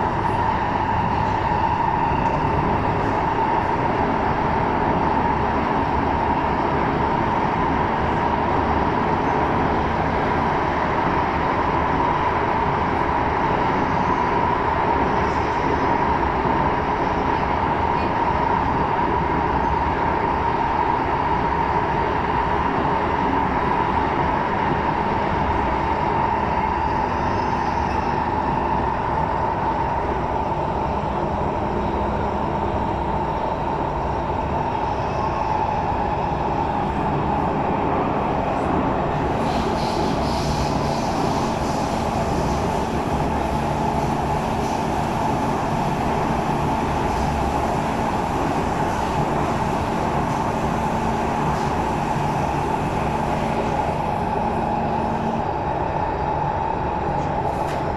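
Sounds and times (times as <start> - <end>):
train rumble inside carriage: 0.0 - 57.9
hiss: 39.3 - 53.9.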